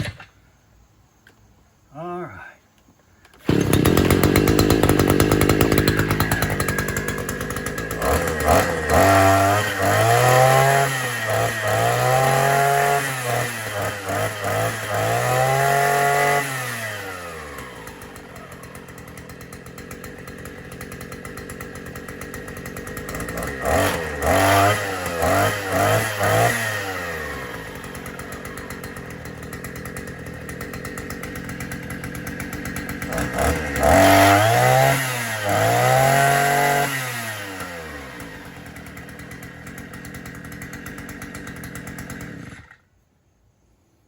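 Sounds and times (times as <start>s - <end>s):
string trimmer engine revving: 3.3s - 42.9s.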